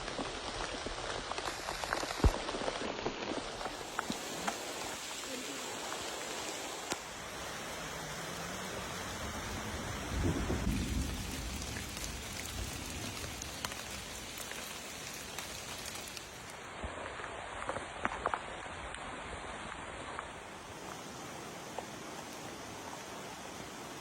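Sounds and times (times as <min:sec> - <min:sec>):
steady rain: 0:00.0 - 0:24.0
thunder rumble: 0:08.7 - 0:15.5
raindrops ticking: 0:10.0 - 0:16.6.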